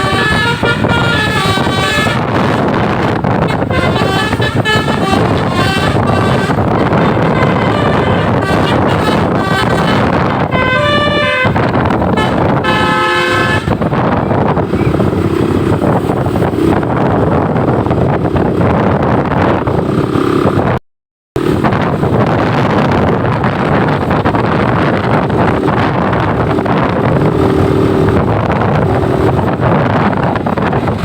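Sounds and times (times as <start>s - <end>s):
faint horn tones: 0.0s - 13.9s
bus horn playing a melody: 0.0s - 14.6s
vehicle noise rushing: 0.0s - 20.8s, 21.4s - 31.0s.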